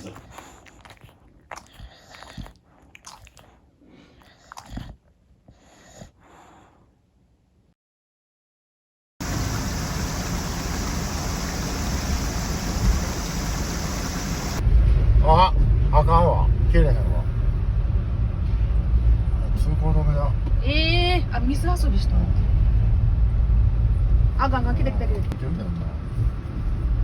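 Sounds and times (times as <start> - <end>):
dog chewing: 0.0 - 6.6.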